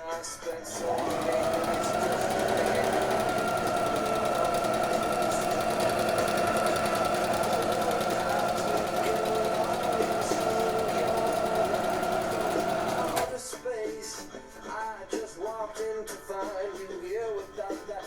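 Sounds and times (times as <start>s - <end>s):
sewing machine stitching: 0.5s - 13.4s.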